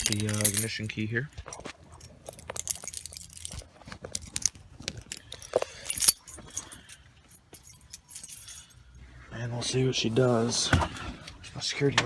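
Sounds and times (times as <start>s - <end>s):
keys jangling: 0.0s - 0.8s, 1.5s - 9.0s
rustling: 1.5s - 11.5s.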